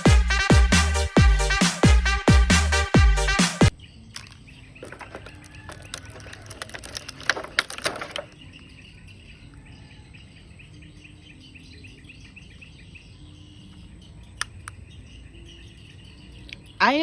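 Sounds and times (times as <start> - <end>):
crackling clicks: 4.2 - 8.6.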